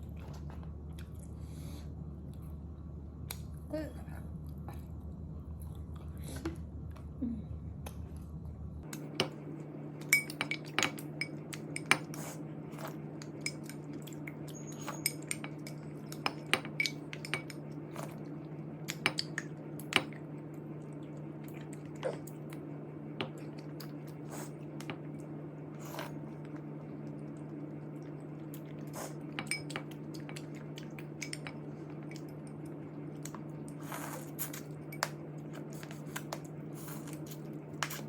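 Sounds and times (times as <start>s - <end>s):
low hum: 0.0s - 11.9s.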